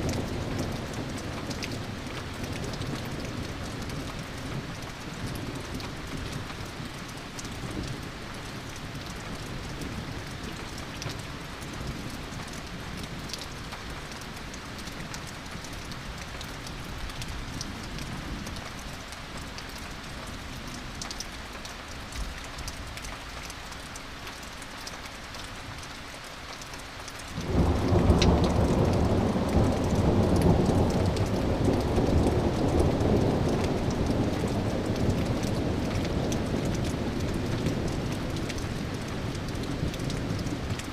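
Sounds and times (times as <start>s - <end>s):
steady rain: 0.0s - 40.9s
thunder rumbling: 27.4s - 39.0s.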